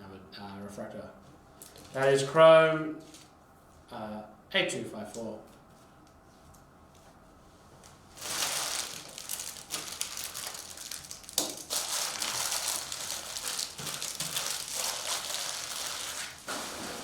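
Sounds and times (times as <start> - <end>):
card pack wrappers crinkling: 1.6 - 2.2, 3.0 - 3.3, 8.2 - 16.5.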